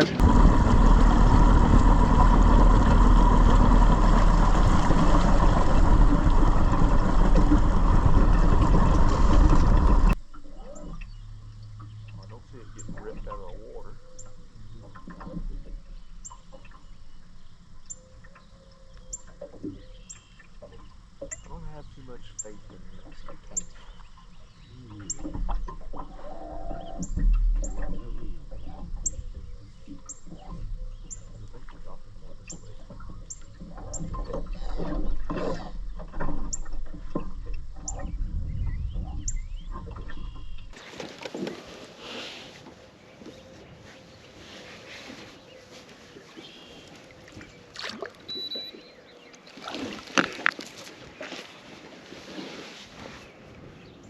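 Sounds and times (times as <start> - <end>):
wind rumbling on microphone: 0.0 - 10.2, 24.4 - 40.8
water splashing against boat: 0.0 - 54.0
bird chirping: 43.0 - 47.7, 48.3 - 49.6.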